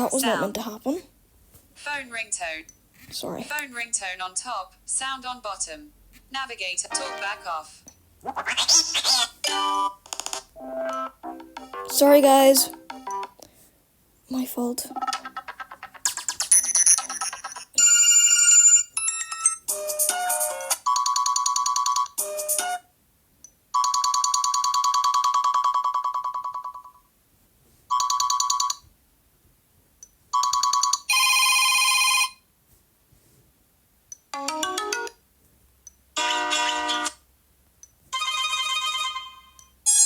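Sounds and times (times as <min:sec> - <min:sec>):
phone ringtone melodies: 0:10.6 - 0:12.0, 0:12.6 - 0:13.3, 0:16.5 - 0:22.8, 0:23.8 - 0:27.0, 0:27.9 - 0:28.8, 0:30.4 - 0:32.4, 0:34.4 - 0:35.2, 0:36.2 - 0:37.1, 0:38.1 - 0:40.0.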